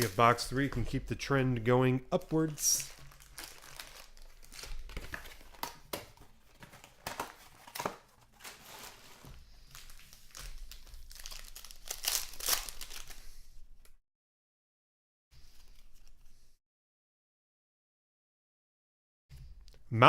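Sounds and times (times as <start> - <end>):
plastic wrapping crinkling and tearing: 0.0 - 0.9, 2.2 - 13.2.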